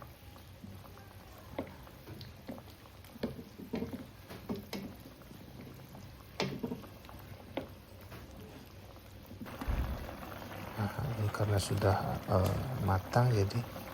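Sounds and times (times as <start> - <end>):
soup simmering: 0.0 - 13.9.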